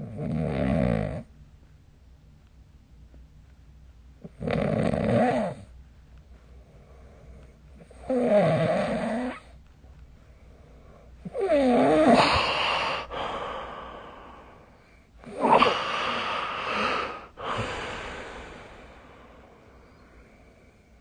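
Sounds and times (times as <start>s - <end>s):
person snoring: 4.3s - 5.6s, 7.8s - 9.4s, 11.2s - 20.0s.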